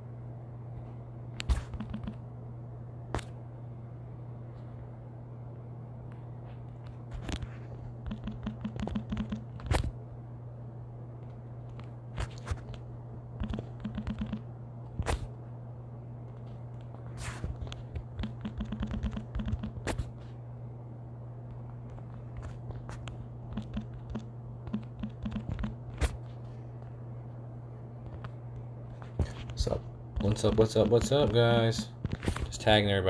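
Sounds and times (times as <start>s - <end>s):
steady low hum: 0.0s - 33.0s
typing on keyboard: 1.6s - 2.2s, 8.0s - 9.8s, 13.4s - 14.5s, 18.2s - 20.0s, 23.0s - 25.8s, 29.6s - 31.9s.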